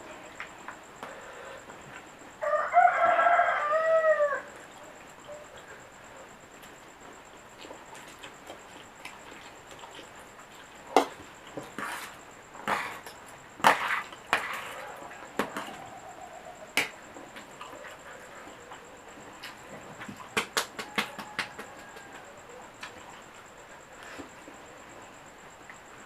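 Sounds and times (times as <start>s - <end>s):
slurping and chewing: 7.5s - 15.8s.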